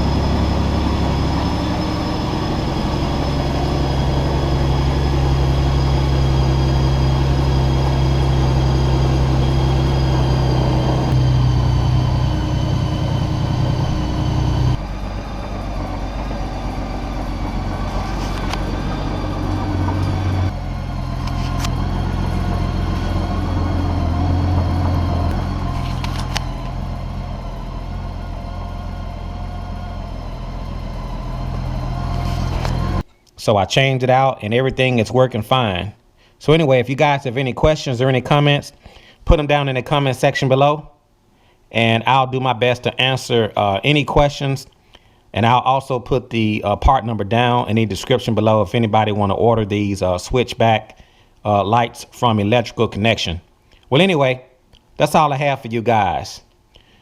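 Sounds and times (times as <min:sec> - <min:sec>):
motorcycle engine idling: 0:00.0 - 0:33.0.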